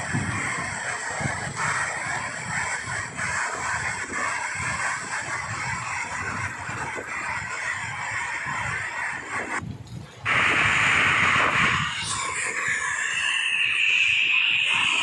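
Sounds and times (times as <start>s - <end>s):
heavy rain pouring: 10.2s - 15.0s.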